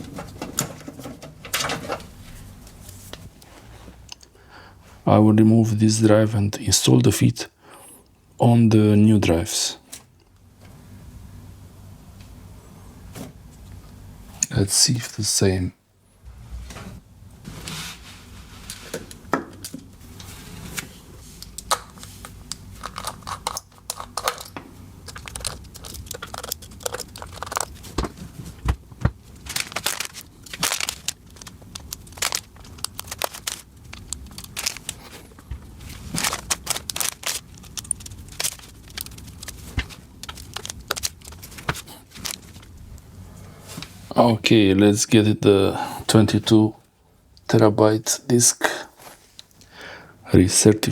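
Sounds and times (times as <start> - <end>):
hard drives clicking and knocking: 0.0 - 2.2
rustling and scraping: 0.0 - 4.1, 16.3 - 19.2, 20.0 - 21.4, 34.4 - 44.1, 48.6 - 49.6.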